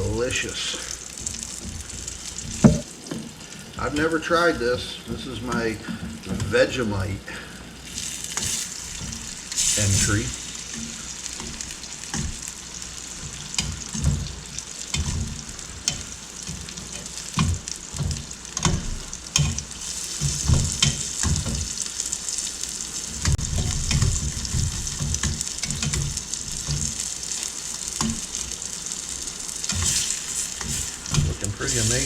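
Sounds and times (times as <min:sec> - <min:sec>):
chicken wings sizzling in a pan: 0:00.0 - 0:32.0
utensil clicking in a pan: 0:07.9 - 0:22.5, 0:23.1 - 0:32.0.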